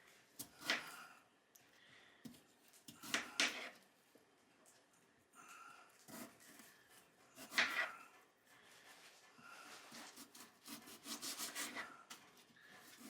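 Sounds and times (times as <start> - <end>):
knife cutting on wooden board: 7.4 - 8.0
knife scraping strokes: 9.7 - 12.0.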